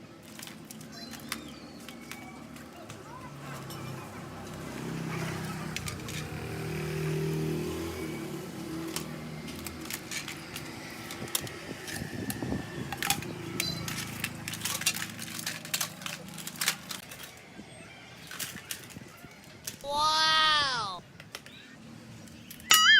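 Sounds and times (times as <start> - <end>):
engine hum: 0.5 - 17.4
sharp clicks and clatter: 5.7 - 6.4, 8.8 - 17.4.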